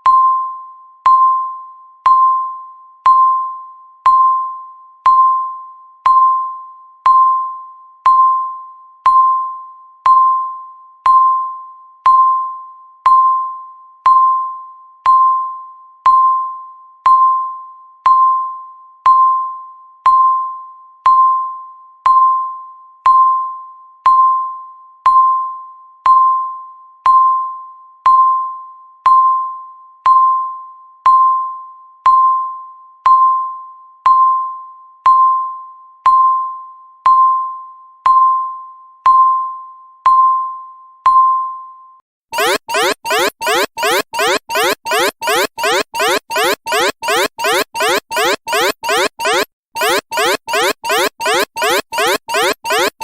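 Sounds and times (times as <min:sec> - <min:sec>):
bell-like timer ding: 0:42.4 - 0:53.0.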